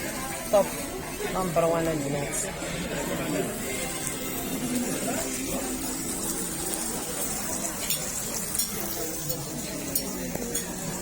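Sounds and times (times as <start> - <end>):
faint background chatter: 0.0 - 11.0
tableware clinking: 6.2 - 11.0.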